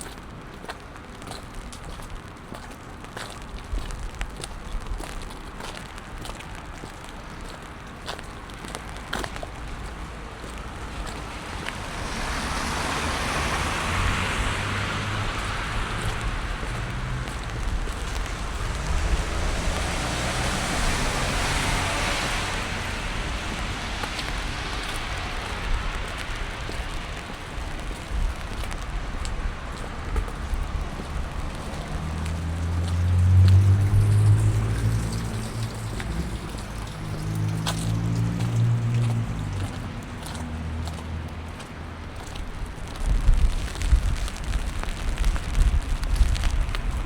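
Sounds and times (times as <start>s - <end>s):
steady rain: 0.0s - 47.0s
tyres hissing on wet road: 5.1s - 47.0s
low engine hum: 9.7s - 47.0s.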